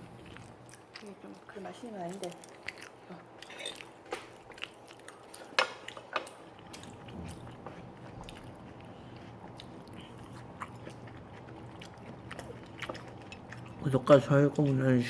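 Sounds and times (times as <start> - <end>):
watermelon bitten and chewed: 6.6 - 14.2.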